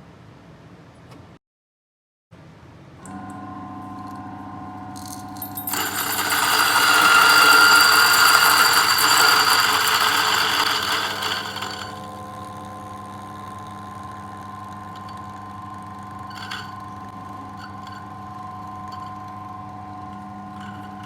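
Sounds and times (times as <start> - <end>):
coffee grinder motor hum: 3.1 - 21.0
coffee beans crunching in grinder: 5.0 - 21.0.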